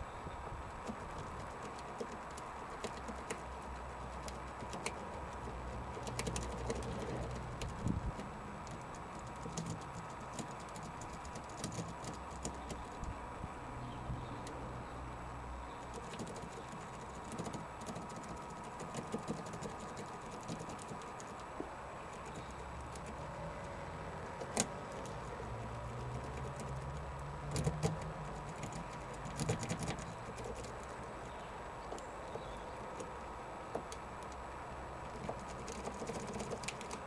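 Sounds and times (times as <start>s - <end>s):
faint steady hum: 0.0s - 37.0s.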